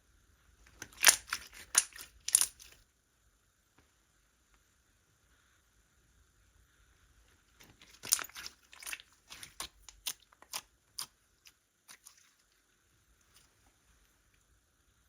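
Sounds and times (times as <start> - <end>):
slime popping and crackling: 0.7 - 2.8, 7.6 - 12.3.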